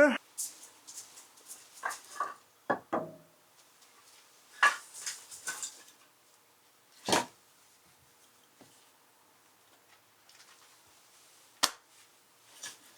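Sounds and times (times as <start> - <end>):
dishes and utensils clattering: 4.6 - 6.0.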